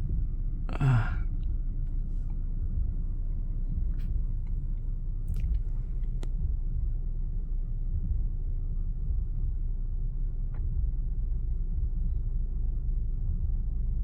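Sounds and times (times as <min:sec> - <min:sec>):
falling vocal sound: 0:00.7 - 0:01.2.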